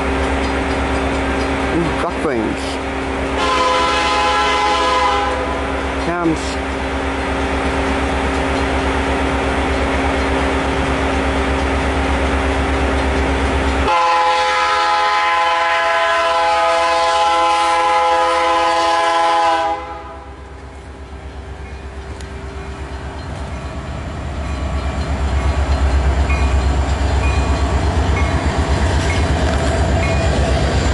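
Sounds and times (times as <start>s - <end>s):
train wheels clattering: 0.0s - 5.0s, 5.7s - 14.0s, 20.6s - 30.9s
locomotive rumble: 0.0s - 30.9s
locomotive air horn chord: 3.4s - 5.7s, 13.8s - 20.4s.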